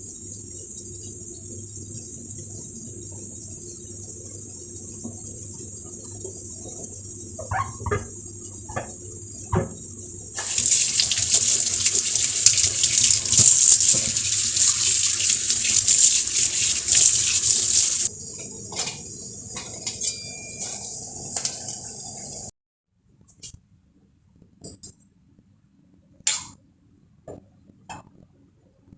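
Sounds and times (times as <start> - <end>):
tap water running into sink: 10.4 - 18.1.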